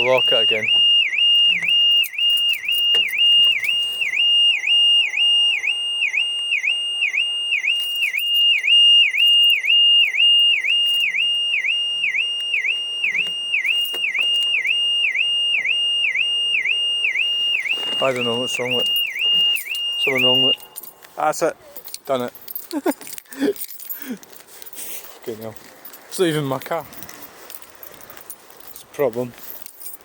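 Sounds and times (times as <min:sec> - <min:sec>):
car alarm siren: 0:00.0 - 0:22.0.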